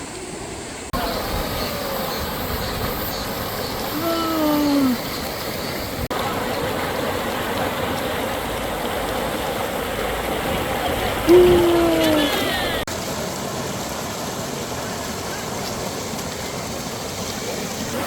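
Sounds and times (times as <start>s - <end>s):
stream rushing over rocks: 1.0s - 18.0s
person crying out: 3.9s - 5.0s, 11.3s - 12.5s.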